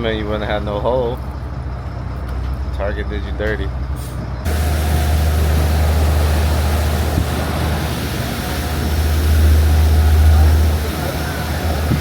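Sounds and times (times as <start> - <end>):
boat engine rumble: 0.0 - 12.0
rush of wind and water: 4.5 - 12.0.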